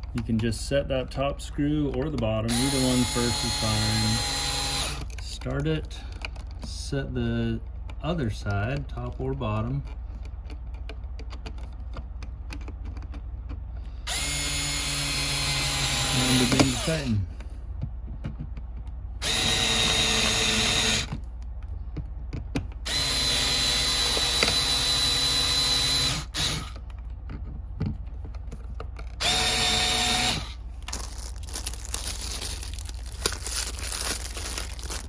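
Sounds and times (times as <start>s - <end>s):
quiet handling: 0.0s - 2.6s, 5.0s - 14.0s, 26.4s - 35.0s
cordless drill driving screws: 2.5s - 5.2s, 14.1s - 17.2s, 19.2s - 21.1s, 22.8s - 26.8s, 29.2s - 30.6s.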